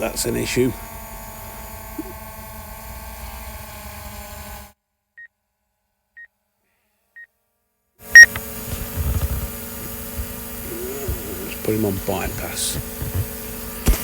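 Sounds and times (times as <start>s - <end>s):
steady hum: 8.0s - 14.0s.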